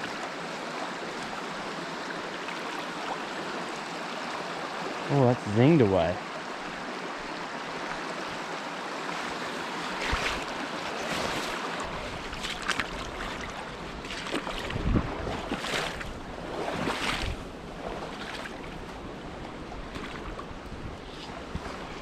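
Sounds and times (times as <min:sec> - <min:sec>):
river water rushing: 0:00.0 - 0:22.0
wind gusting on microphone: 0:13.7 - 0:22.0.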